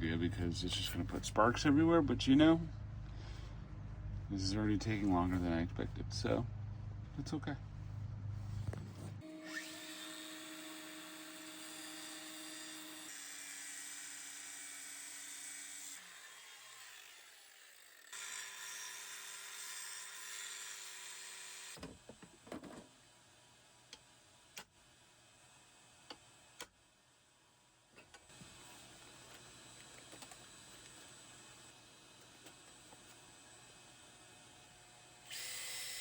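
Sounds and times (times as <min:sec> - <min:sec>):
angle grinder cutting metal: 0:09.2 - 0:21.8, 0:35.2 - 0:36.0.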